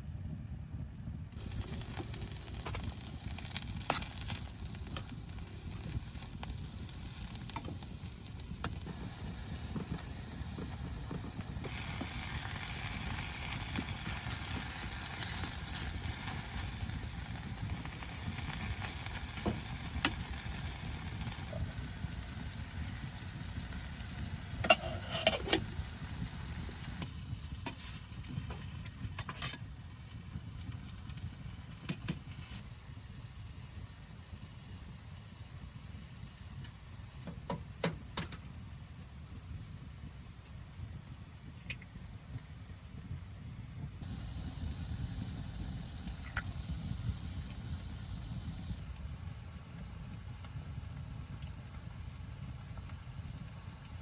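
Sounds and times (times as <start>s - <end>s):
sharp crackles: 1.4s - 29.1s
food sizzling in a pan: 1.4s - 29.5s, 44.0s - 48.8s.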